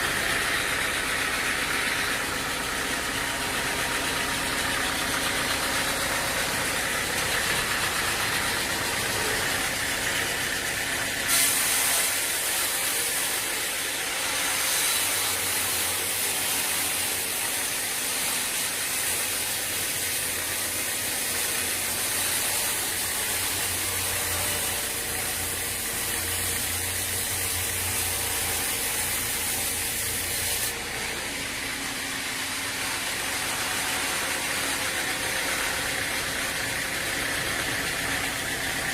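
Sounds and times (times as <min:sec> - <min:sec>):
sawmill machinery running: 0:00.0 - 0:38.9
loud high hiss: 0:11.2 - 0:13.2.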